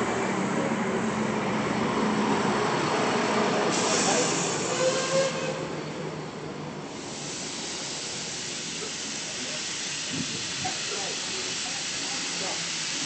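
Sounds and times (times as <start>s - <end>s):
steam locomotive hissing: 2.4s - 6.0s, 6.8s - 13.0s.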